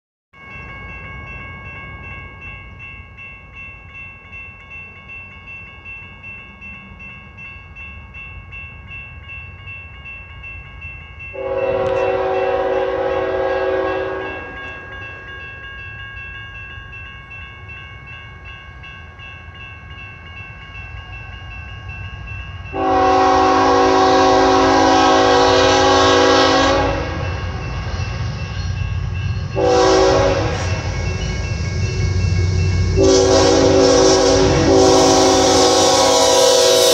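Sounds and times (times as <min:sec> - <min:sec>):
bell ringing: 0:00.4 - 0:36.9
locomotive air horn blasts: 0:11.4 - 0:14.5, 0:22.8 - 0:27.2, 0:29.6 - 0:30.8, 0:33.0 - 0:36.9.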